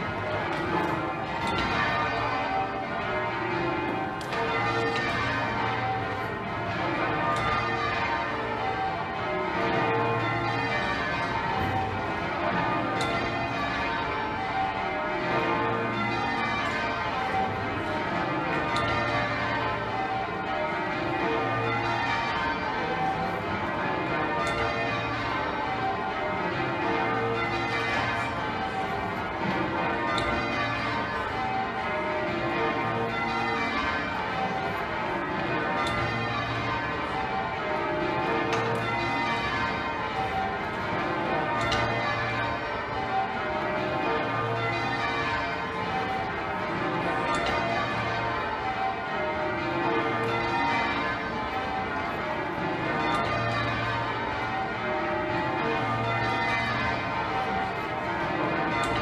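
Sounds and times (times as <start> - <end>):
church bells change ringing: 0.0 - 59.0.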